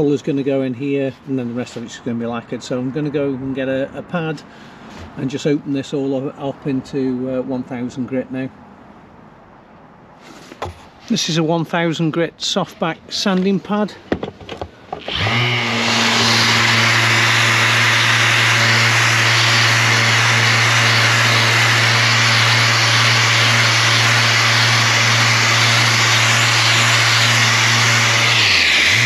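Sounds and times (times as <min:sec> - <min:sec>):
orbital sander humming: 0:15.0 - 0:29.0.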